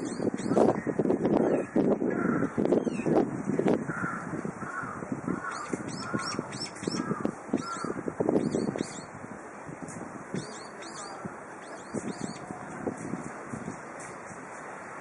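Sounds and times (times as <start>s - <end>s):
small birds chirping: 0.0s - 0.8s, 5.4s - 9.1s, 10.3s - 12.6s
birds calling: 0.0s - 3.1s, 3.9s - 9.1s, 10.3s - 12.6s
wind buffeting microphone: 0.0s - 15.0s.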